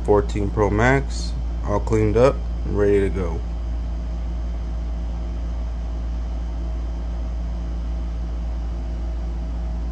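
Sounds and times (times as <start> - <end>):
machine hum: 0.0 - 9.9.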